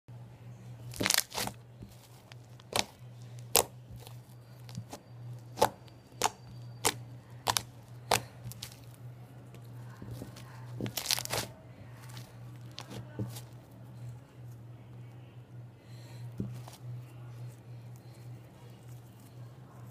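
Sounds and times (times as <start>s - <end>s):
steady low hum: 0.1s - 19.9s
sticky slime popping: 0.9s - 9.0s, 10.0s - 13.5s.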